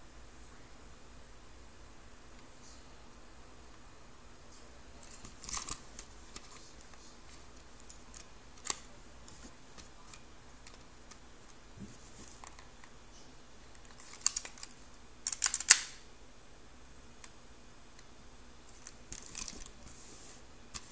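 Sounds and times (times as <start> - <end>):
pistol clicks and rattle: 13.8 - 16.0.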